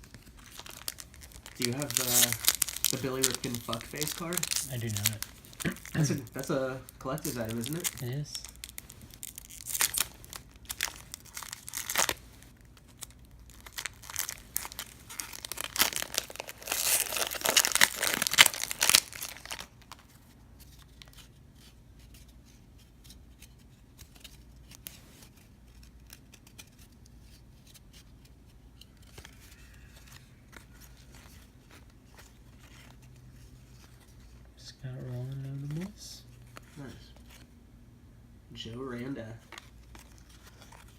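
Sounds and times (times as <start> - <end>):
wrapper tearing and crinkling: 0.0 - 20.1
cards being leafed through: 0.0 - 22.3, 23.0 - 34.4, 39.3 - 40.9.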